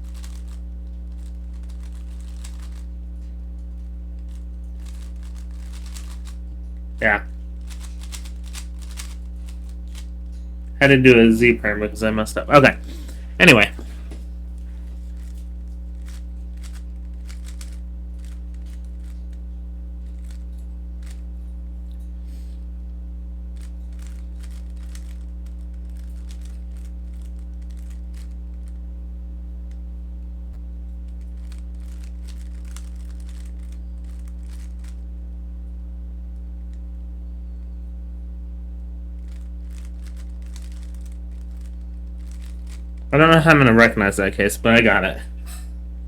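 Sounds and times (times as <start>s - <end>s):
puzzle cube plastic clicks: 0.0s - 2.9s, 4.3s - 6.4s, 7.0s - 10.1s, 16.0s - 19.2s, 23.6s - 28.8s, 31.4s - 35.0s, 39.2s - 42.8s
low electrical hum: 0.0s - 46.0s.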